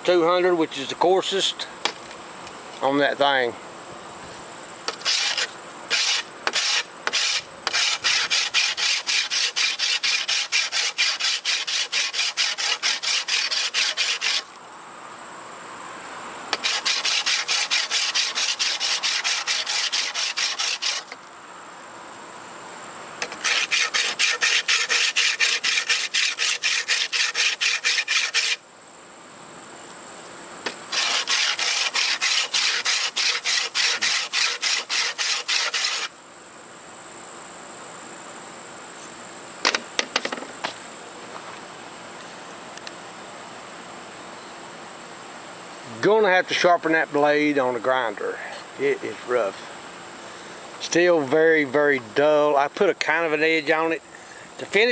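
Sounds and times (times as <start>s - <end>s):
sharpening block rubbing metal blade: 5.0s - 14.4s, 16.6s - 21.2s, 23.2s - 28.6s, 30.9s - 36.1s.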